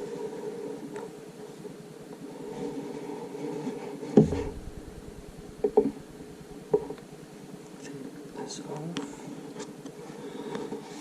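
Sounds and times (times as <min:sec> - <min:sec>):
knocks on a box: 0:04.2 - 0:04.9
steady low hum: 0:04.2 - 0:08.4.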